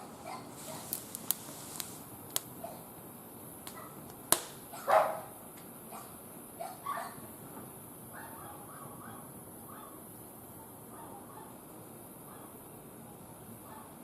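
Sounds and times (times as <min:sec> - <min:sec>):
wood fire crackling and popping: 0:00.1 - 0:02.9, 0:03.5 - 0:04.7.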